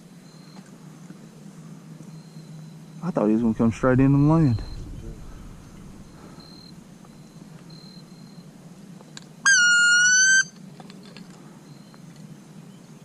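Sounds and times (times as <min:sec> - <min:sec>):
duck call whistled note: 0:09.5 - 0:10.5.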